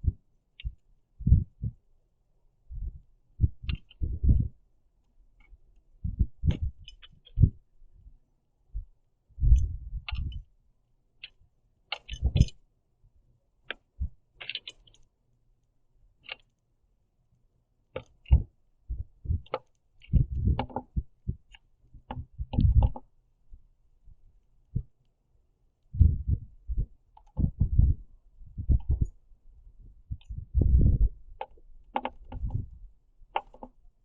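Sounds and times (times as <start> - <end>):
bird pecking seeds: 11.2 - 12.6, 13.7 - 15.1, 31.3 - 32.6, 33.3 - 33.8.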